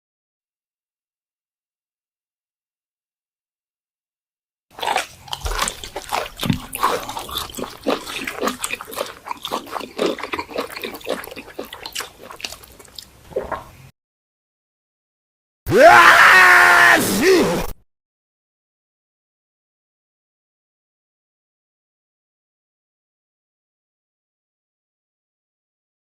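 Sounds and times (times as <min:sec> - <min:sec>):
stomach growling and gurgling: 0:04.7 - 0:13.9.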